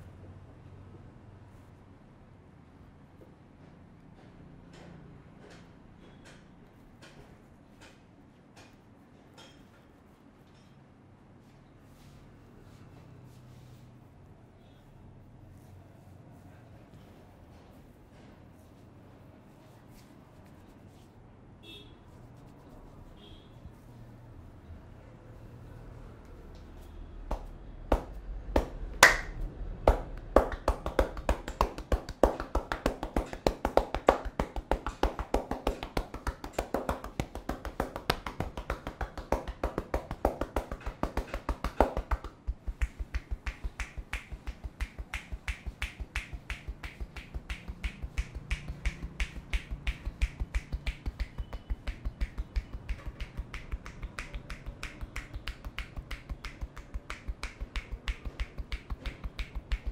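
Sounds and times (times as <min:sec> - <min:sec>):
hands tapping on head: 0:27.3 - 0:59.9.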